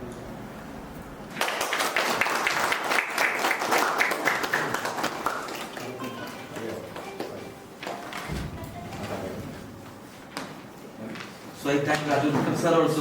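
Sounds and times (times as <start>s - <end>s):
audience applauding: 1.3s - 8.0s.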